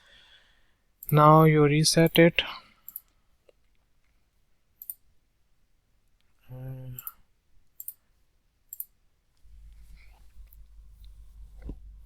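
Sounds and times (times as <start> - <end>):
computer mouse clicks: 6.9 - 7.1, 7.8 - 8.0, 8.7 - 8.9
low rumble: 9.4 - 12.0.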